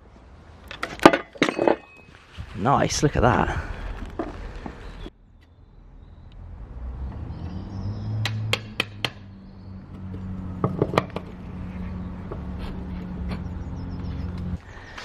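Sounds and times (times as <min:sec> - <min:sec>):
metal tools clinking: 0:00.7 - 0:02.2.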